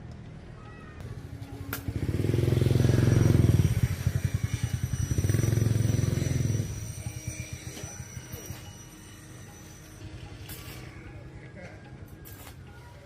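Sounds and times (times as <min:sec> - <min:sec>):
small engine pulsing: 0:01.0 - 0:11.3.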